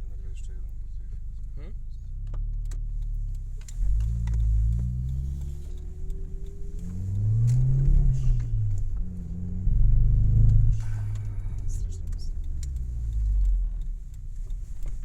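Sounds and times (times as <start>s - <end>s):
car engine revving: 0.0s - 15.0s
sharp clicks: 10.4s - 15.0s.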